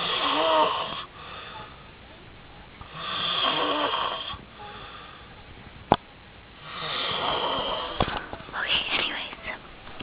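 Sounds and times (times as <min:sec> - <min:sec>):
man snoring loudly: 0:00.0 - 0:01.1, 0:03.0 - 0:04.4, 0:06.7 - 0:08.0.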